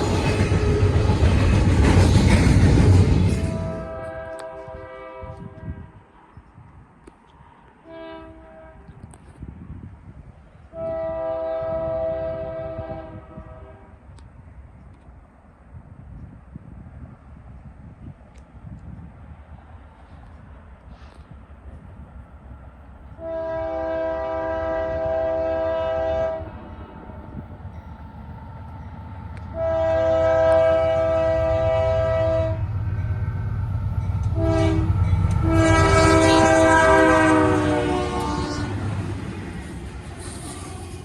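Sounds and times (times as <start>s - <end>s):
low rumble of train: 0.0s - 41.0s
locomotive air horn blasts: 3.4s - 6.0s, 7.8s - 9.0s, 10.7s - 14.0s, 23.1s - 26.9s, 29.5s - 32.8s, 34.2s - 39.0s.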